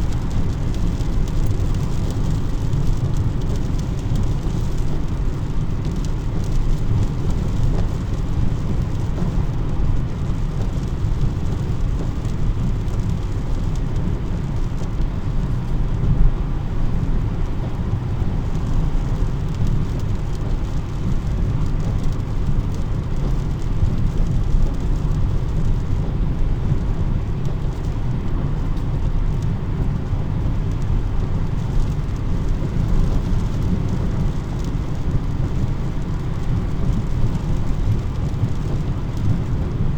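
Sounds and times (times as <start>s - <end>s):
steady rain: 0.0s - 39.9s.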